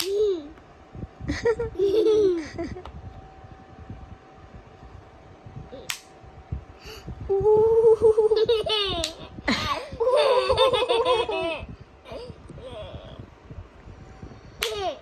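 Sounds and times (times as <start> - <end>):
child laughing: 0.0 - 0.6, 1.3 - 2.9, 7.4 - 13.2, 14.6 - 15.0.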